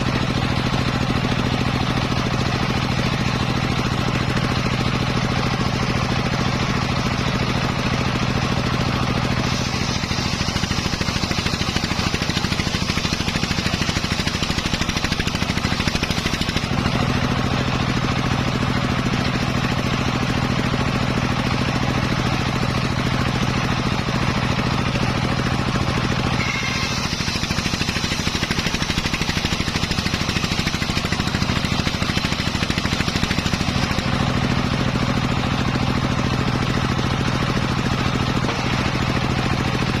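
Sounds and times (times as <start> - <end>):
circular saw engine running: 0.0 - 40.0
saw blade cutting wood: 8.9 - 17.0, 26.2 - 34.2, 38.0 - 39.8.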